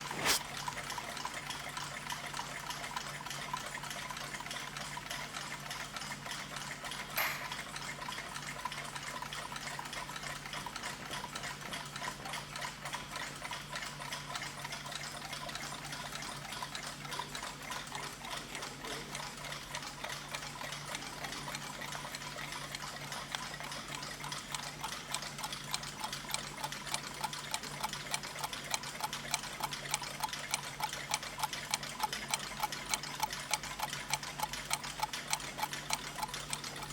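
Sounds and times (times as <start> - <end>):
many clocks ticking: 0.5 - 36.9
sharp click: 7.2 - 7.7.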